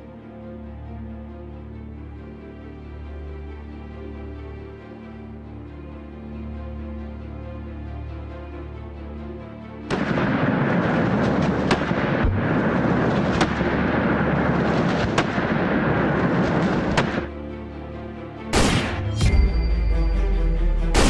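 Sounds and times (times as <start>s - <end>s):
background music: 0.0s - 21.0s
rapid gunfire: 9.9s - 17.3s, 18.6s - 19.1s
single gunshots: 9.9s - 17.3s, 18.5s - 19.4s.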